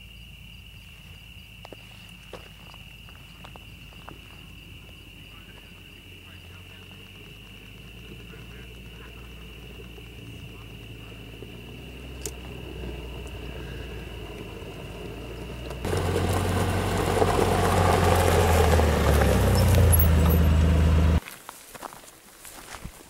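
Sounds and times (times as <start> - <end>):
vehicle engine humming: 0.0 - 21.3
footsteps: 0.9 - 10.9, 21.2 - 23.0.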